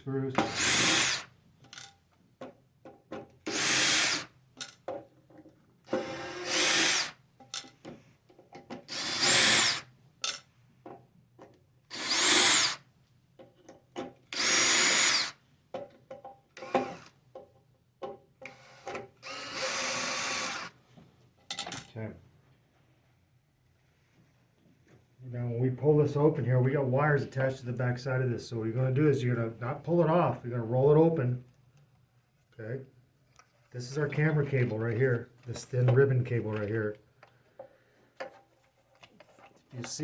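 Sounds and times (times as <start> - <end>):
screw gun whirring: 0.4 - 1.9, 3.5 - 4.3, 5.9 - 7.2, 8.9 - 9.9, 11.9 - 12.8, 14.3 - 15.4, 16.6 - 17.1, 18.4 - 20.8.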